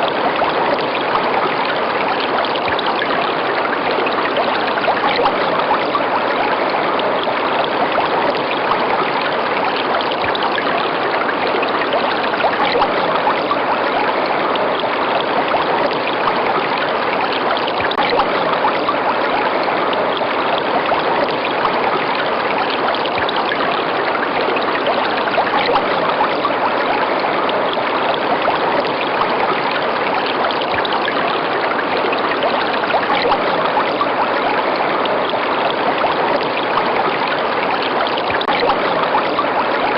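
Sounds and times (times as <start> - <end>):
river water flowing: 0.0 - 39.9.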